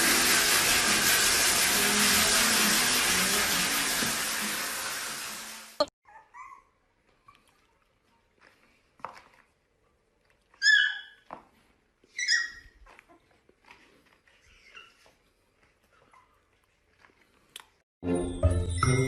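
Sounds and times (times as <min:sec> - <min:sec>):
puppy whimpering: 0:06.0 - 0:07.4, 0:10.6 - 0:11.2, 0:14.4 - 0:15.2
puppy yelping: 0:06.0 - 0:07.4, 0:10.5 - 0:11.3, 0:12.1 - 0:13.3.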